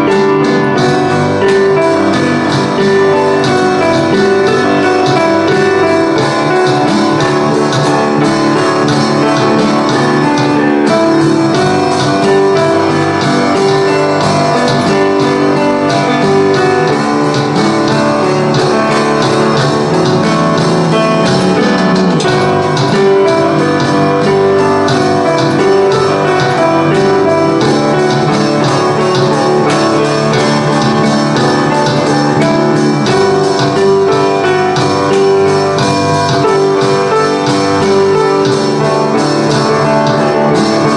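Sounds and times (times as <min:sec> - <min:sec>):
bass guitar line: 0:00.0 - 0:40.9
drum kit cymbal hits: 0:00.0 - 0:40.9
piano chords: 0:00.0 - 0:40.9.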